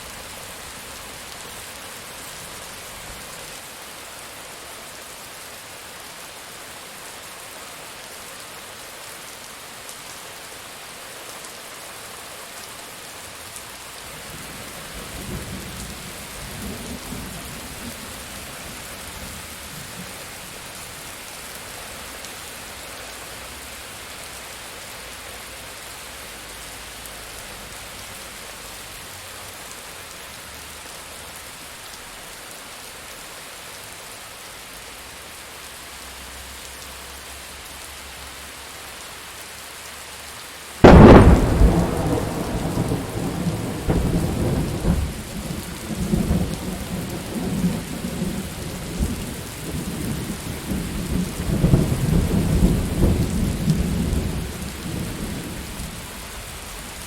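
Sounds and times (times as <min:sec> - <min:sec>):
steady rain: 0:00.0 - 0:57.0
thunderclap and rolling rumble: 0:40.8 - 0:56.0.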